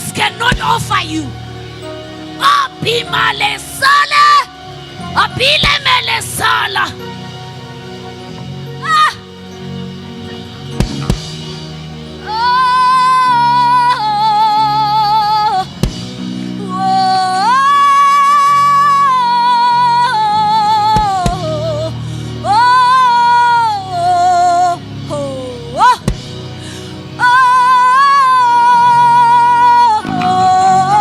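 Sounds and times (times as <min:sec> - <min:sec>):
high melody with vibrato: 0:00.0 - 0:20.9, 0:27.7 - 0:31.0
sustained keyboard chords: 0:00.0 - 0:31.0.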